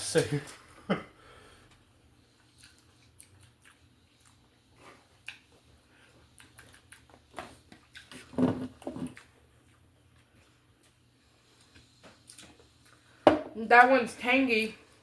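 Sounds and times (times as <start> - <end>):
person chewing food: 1.6 - 13.2.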